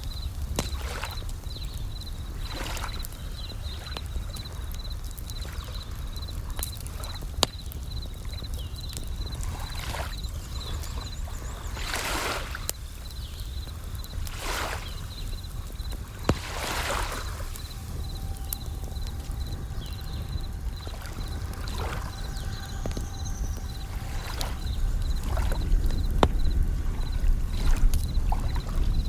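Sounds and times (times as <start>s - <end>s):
sharp fire pops: 0.0s - 11.8s, 12.4s - 29.0s
crackling wood fire: 0.0s - 29.0s
crickets trilling: 0.0s - 29.0s
waves washing in: 13.6s - 29.0s.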